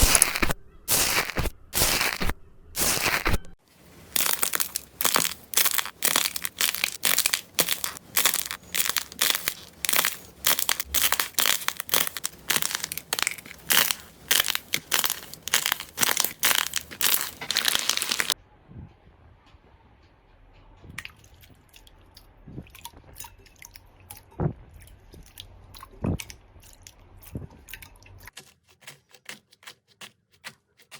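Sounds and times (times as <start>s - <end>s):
crunchy slime squeezed by hand: 0.0s - 18.4s.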